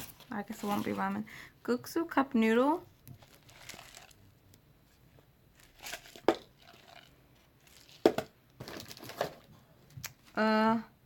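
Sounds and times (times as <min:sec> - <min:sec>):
plastic packaging crinkling: 0:03.0 - 0:04.4, 0:05.5 - 0:09.5.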